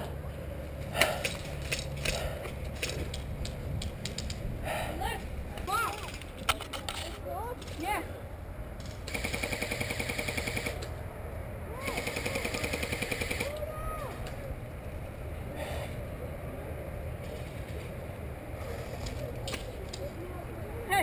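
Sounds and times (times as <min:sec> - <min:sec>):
airsoft gun firing bursts: 0:09.1 - 0:10.8, 0:12.0 - 0:13.5.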